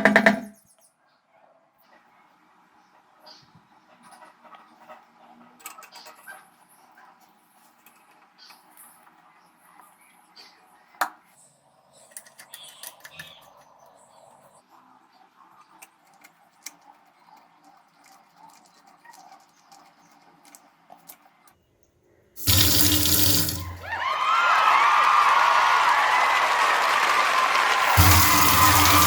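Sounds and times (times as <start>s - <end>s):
tap water running into sink: 22.4s - 24.0s, 27.8s - 29.0s.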